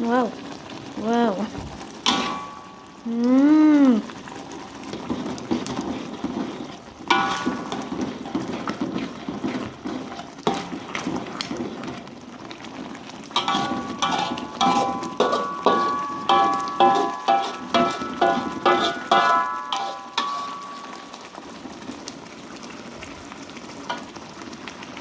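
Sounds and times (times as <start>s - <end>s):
metal spatula scraping a pan: 2.0s - 3.0s, 4.3s - 22.0s, 23.9s - 24.2s.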